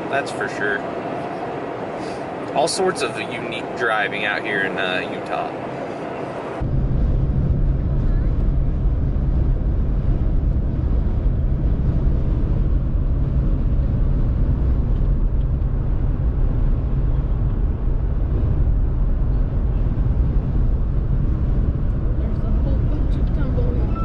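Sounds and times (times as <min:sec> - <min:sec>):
road and engine rumble in truck cab: 0:00.0 - 0:24.0.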